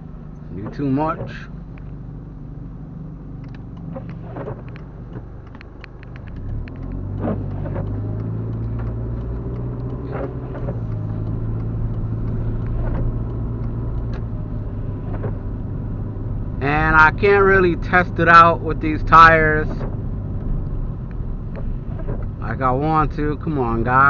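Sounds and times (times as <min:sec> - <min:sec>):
car engine running: 0:00.0 - 0:24.0
light ticks and soft swish: 0:03.0 - 0:16.1.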